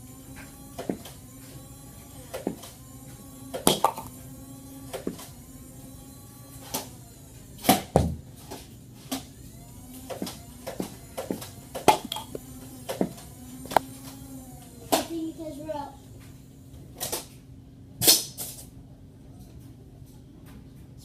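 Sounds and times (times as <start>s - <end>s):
toy blaster motor humming: 0.0s - 16.2s.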